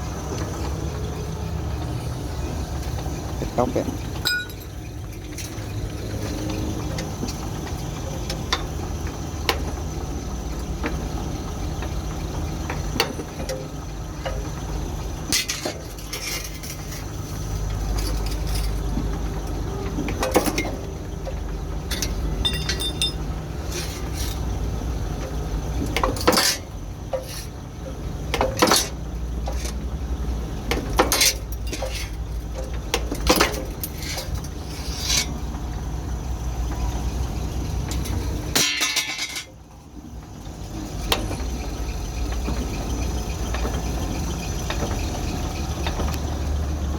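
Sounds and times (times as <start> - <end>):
sharp metallic clanks: 4.2 - 5.8, 21.9 - 24.4, 37.9 - 39.6.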